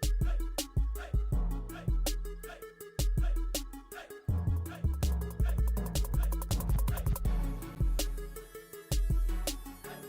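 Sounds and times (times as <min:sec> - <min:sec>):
hip hop workout music: 0:00.0 - 0:10.0.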